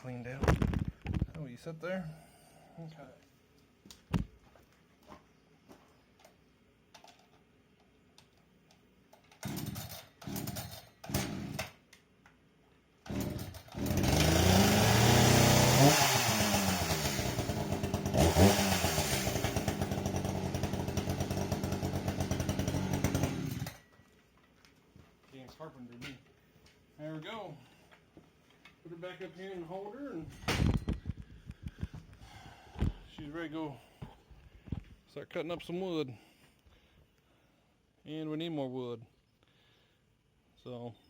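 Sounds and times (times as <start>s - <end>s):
chainsaw pull-starting: 9.1s - 11.8s, 13.0s - 23.9s
chainsaw revving: 9.3s - 11.8s, 13.0s - 23.8s.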